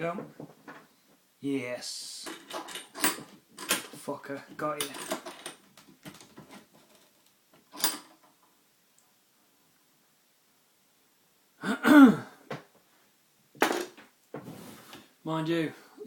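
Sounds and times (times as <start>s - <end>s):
man clearing his throat: 11.6s - 12.4s.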